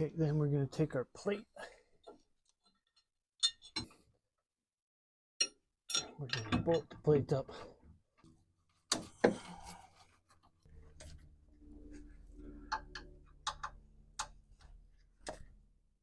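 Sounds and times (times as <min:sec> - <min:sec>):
low steady hum: 0:10.7 - 0:16.0.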